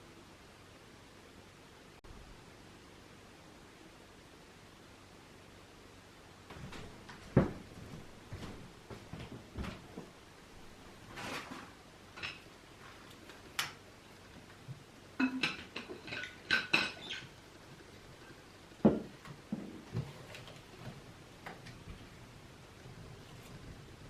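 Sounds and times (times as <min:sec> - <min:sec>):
cutlery and dishes clinking: 0:15.2 - 0:17.3.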